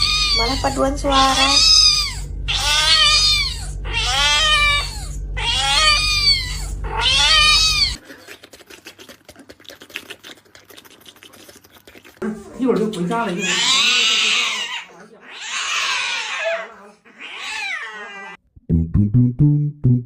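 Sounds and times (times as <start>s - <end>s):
cat meowing loudly: 0.0s - 0.7s, 1.4s - 8.0s, 13.4s - 18.4s
low hum: 0.0s - 8.0s.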